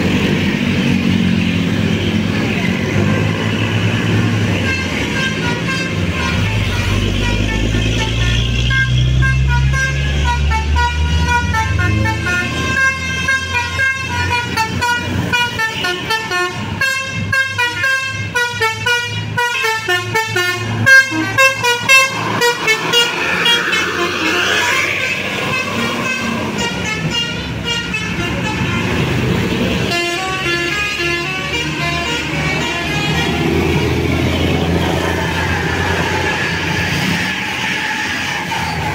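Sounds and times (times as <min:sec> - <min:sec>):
air horn tooting a tune: 0:04.4 - 0:35.4.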